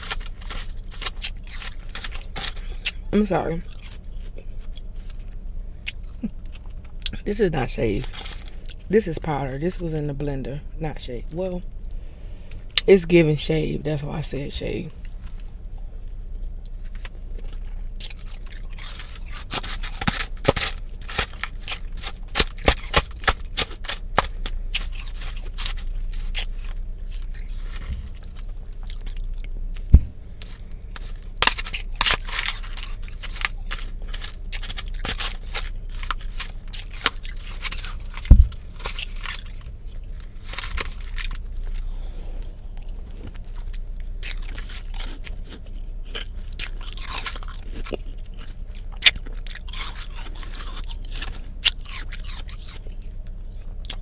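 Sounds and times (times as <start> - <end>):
crunching ice chewing: 0.0 - 9.8, 14.7 - 54.0
loud thumps: 29.9 - 30.4, 38.2 - 38.8.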